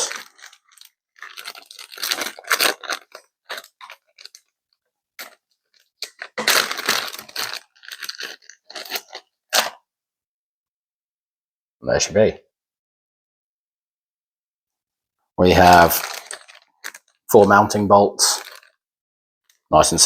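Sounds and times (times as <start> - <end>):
packaging ripping and crunching: 0.0 - 4.5, 5.2 - 9.8, 15.6 - 18.8.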